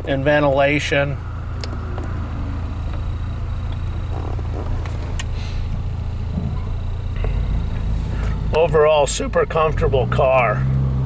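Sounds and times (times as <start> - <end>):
car engine running from inside: 0.0 - 11.0.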